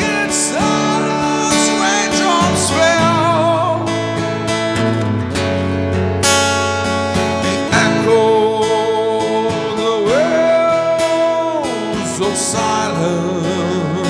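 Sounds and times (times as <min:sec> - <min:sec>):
person singing long notes: 0:00.0 - 0:04.8, 0:07.2 - 0:14.0
acoustic guitar strummed: 0:00.0 - 0:14.0.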